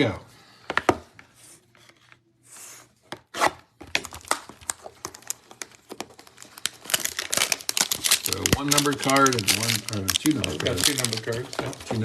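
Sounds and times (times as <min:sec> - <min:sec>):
card pack wrapper tearing: 0:03.4 - 0:12.0
cards riffled clicking: 0:03.8 - 0:12.0.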